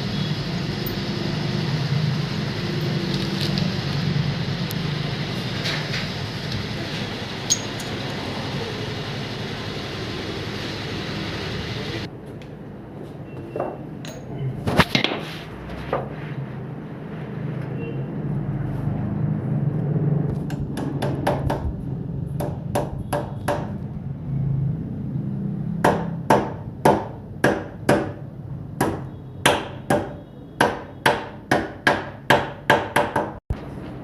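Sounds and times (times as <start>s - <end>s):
hammer striking metal: 7.5s - 8.0s, 28.8s - 33.4s.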